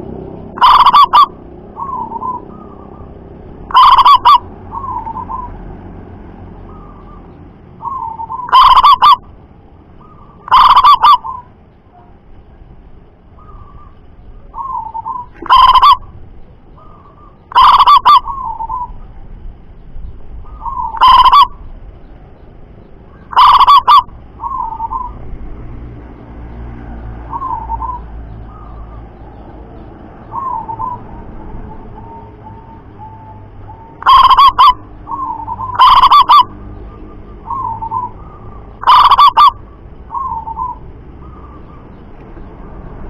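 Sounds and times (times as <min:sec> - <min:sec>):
soft rolling dove coos: 0:00.0 - 0:05.6, 0:06.6 - 0:09.2, 0:10.0 - 0:12.1, 0:13.4 - 0:16.1, 0:16.8 - 0:19.2, 0:20.4 - 0:21.6, 0:23.2 - 0:25.2, 0:27.2 - 0:29.4, 0:30.3 - 0:42.4
loud dove calls: 0:00.0 - 0:05.7, 0:06.6 - 0:09.4, 0:10.0 - 0:11.6, 0:13.4 - 0:16.1, 0:16.7 - 0:19.1, 0:20.4 - 0:21.7, 0:23.1 - 0:25.3, 0:27.2 - 0:29.6, 0:30.2 - 0:42.5.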